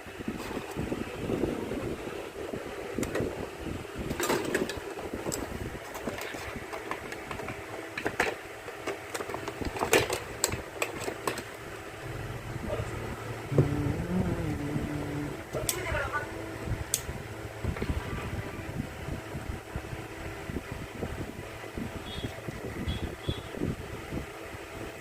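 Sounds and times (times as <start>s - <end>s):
steady low rumble: 12.0s - 20.4s.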